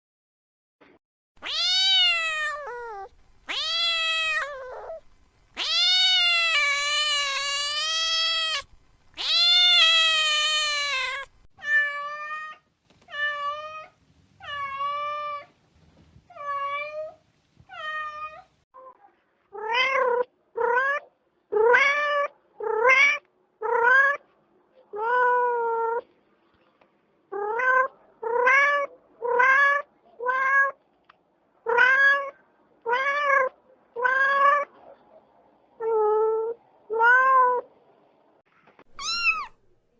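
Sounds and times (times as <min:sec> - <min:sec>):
cat meowing: 0:01.4 - 0:05.0, 0:05.6 - 0:15.5, 0:38.9 - 0:39.6.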